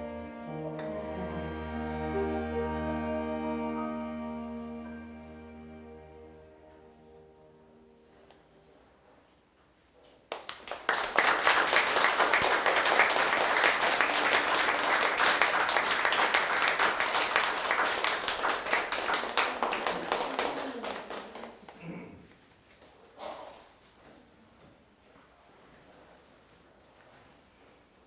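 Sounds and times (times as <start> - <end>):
audience applauding: 10.3 - 21.8.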